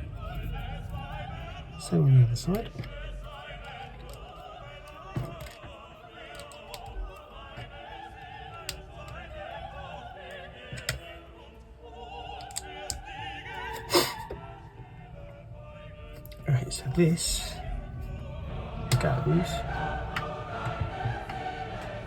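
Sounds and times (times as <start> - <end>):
operatic singing music: 0.0 - 22.0
plastic bricks clicking: 3.7 - 7.8, 10.2 - 11.1.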